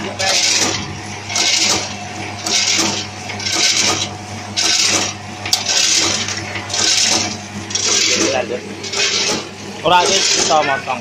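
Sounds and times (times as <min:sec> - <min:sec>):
steady motor hum: 0:00.0 - 0:11.0.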